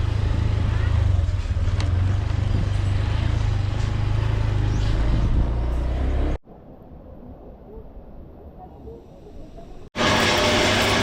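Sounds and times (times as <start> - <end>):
motorbike engine rumble: 0.0 - 6.4.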